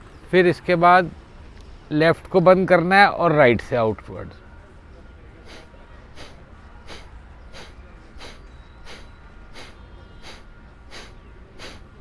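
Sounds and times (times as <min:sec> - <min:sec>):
forceful nasal exhalations: 0:05.4 - 0:12.0.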